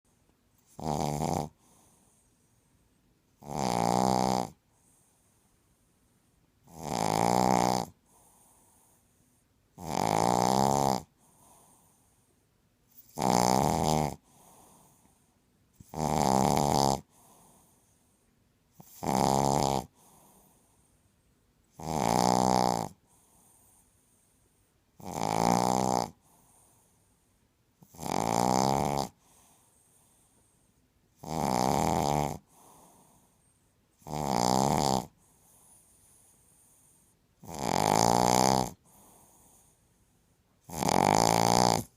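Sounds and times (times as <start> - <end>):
pet snoring loudly: 0.6 - 2.2, 3.4 - 5.0, 6.6 - 8.9, 9.7 - 12.0, 12.9 - 15.0, 15.8 - 17.7, 18.8 - 20.6, 21.7 - 23.8, 25.0 - 26.8, 27.8 - 30.2, 31.2 - 33.3, 34.0 - 39.7, 40.6 - 41.9
faint breathing: 1.5 - 3.2, 4.6 - 6.3, 8.0 - 9.7, 11.1 - 12.6, 14.2 - 15.6, 17.0 - 18.5, 19.9 - 21.4, 23.0 - 24.9, 26.1 - 27.5, 29.1 - 31.0, 32.4 - 33.9, 35.1 - 37.4, 38.8 - 40.5.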